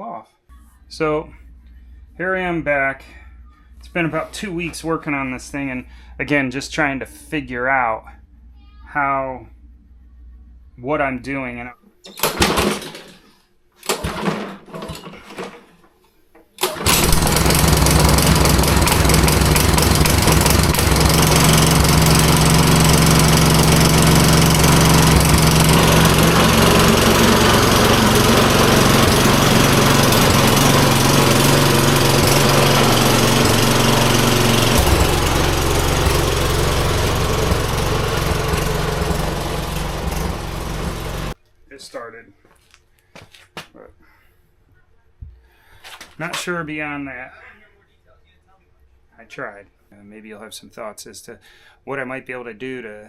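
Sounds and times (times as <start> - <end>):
lawnmower engine running: 12.1 - 13.2, 13.8 - 15.7, 16.6 - 41.4.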